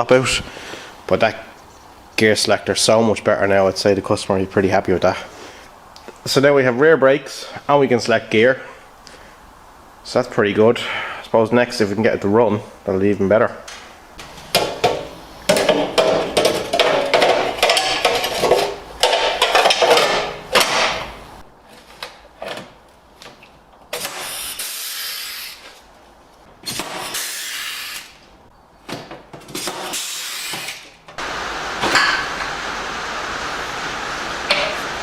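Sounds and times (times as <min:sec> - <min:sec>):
tools clattering and knocking: 0:13.7 - 0:21.1, 0:21.8 - 0:23.4
power tool bursts: 0:24.0 - 0:25.6.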